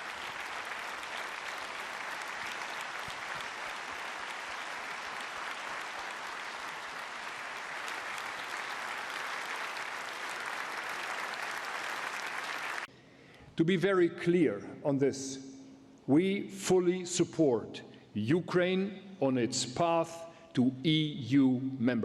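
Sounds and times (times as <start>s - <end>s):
audience applauding: 0.0s - 12.9s.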